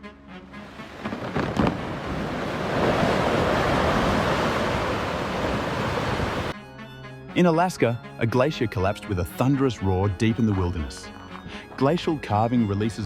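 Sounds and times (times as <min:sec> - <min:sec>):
churning water: 0:00.5 - 0:06.5
wind roaring: 0:00.7 - 0:06.5
sharp cracks: 0:01.0 - 0:02.0.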